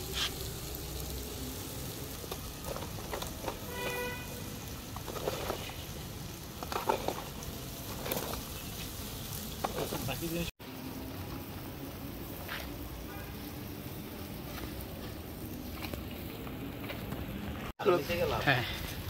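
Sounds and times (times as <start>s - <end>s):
fish sizzling over fire: 0.0s - 19.0s.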